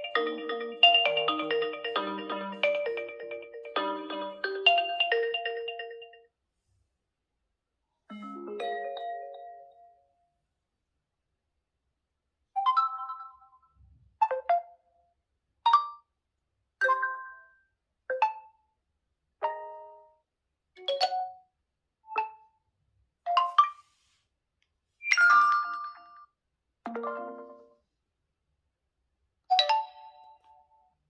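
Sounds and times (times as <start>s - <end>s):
phone ringtone chime notes: 0.0s - 6.2s.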